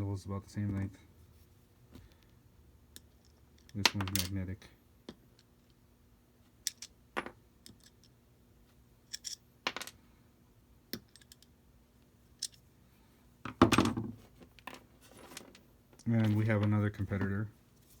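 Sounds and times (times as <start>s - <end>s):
small metal parts clicking: 6.6s - 7.0s, 9.1s - 10.0s, 11.0s - 11.5s, 12.4s - 12.6s.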